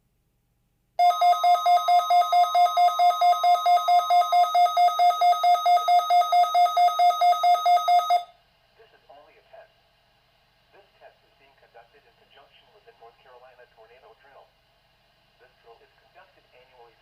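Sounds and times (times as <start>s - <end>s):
weather radio alarm beeping: 1.0s - 8.3s.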